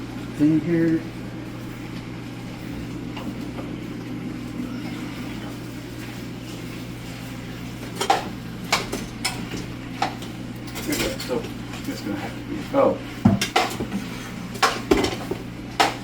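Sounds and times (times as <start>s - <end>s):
low kitchen hum: 0.0s - 16.0s
pots and utensils clinking: 7.8s - 16.0s.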